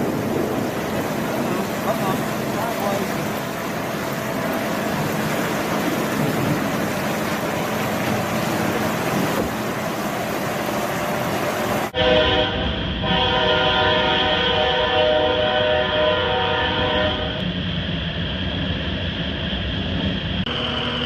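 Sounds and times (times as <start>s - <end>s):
steady rushing noise: 0.0s - 13.2s, 16.8s - 21.0s
horn sounding a chord: 12.0s - 17.4s.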